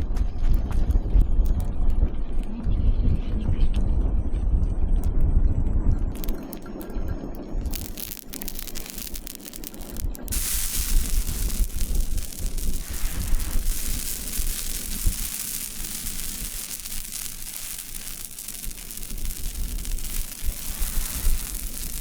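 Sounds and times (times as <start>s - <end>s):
dense crackling and crunching: 6.1s - 22.0s.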